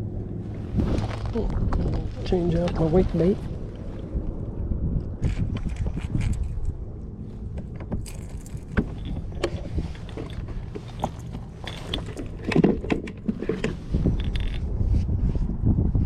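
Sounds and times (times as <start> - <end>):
low rumble: 0.0 - 16.0
fishing tackle clicking and rattling: 5.2 - 6.8, 7.6 - 14.6.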